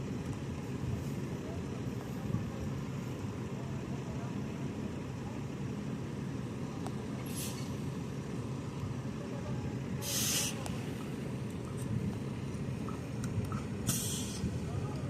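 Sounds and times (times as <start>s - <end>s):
heavy vehicle engine running: 0.0s - 15.0s
air hissing: 7.2s - 7.8s, 10.0s - 10.8s, 13.8s - 14.6s.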